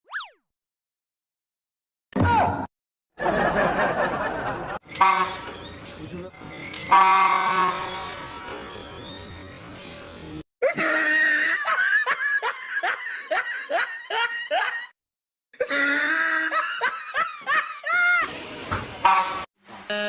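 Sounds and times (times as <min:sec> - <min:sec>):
loud hearty laughter: 0:03.2 - 0:04.8, 0:10.6 - 0:15.0, 0:15.6 - 0:18.3.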